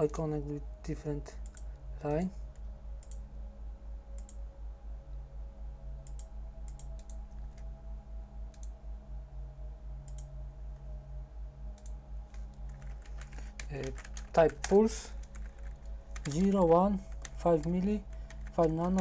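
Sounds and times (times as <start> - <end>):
pulsing low hum: 0.0 - 19.0
computer mouse clicks: 1.4 - 1.7, 2.5 - 3.2, 4.2 - 4.4, 6.0 - 7.7, 8.5 - 8.7, 10.0 - 10.3, 11.8 - 19.0.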